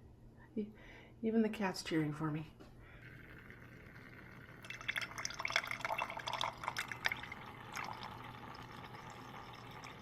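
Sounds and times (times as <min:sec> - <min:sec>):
coffee dripping into a mug: 0:03.0 - 0:10.0.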